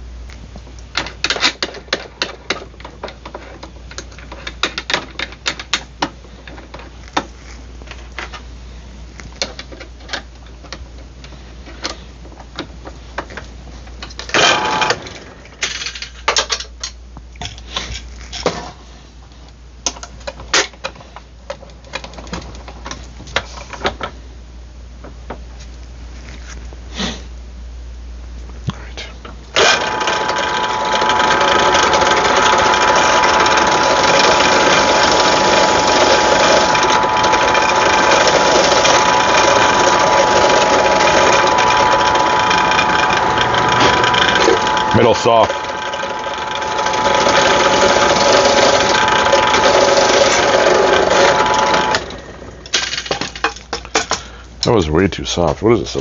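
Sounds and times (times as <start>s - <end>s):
loud clattering rattle: 29.6s - 54.3s.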